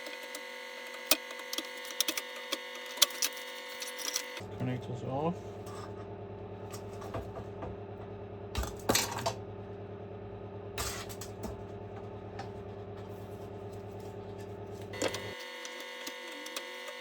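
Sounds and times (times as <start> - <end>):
clicks of wire connectors: 0.0 - 4.4, 15.0 - 17.0
steady background hum: 0.0 - 17.0.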